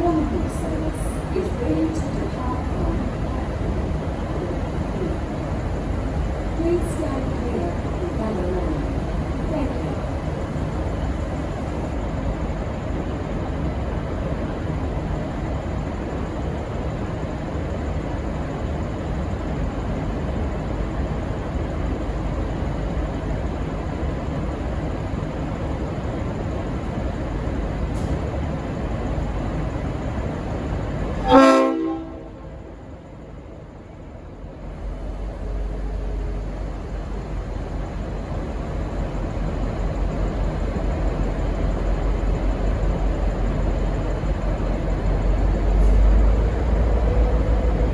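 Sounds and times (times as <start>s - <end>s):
diesel locomotive rumbling: 0.0s - 47.9s
locomotive horn blast: 31.2s - 32.8s.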